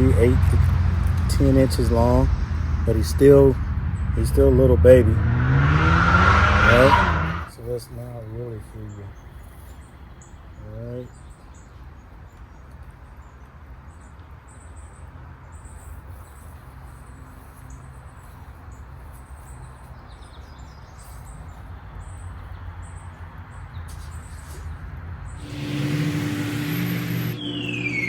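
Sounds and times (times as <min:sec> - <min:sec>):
small birds chirping: 0:07.5 - 0:13.4, 0:19.1 - 0:28.0.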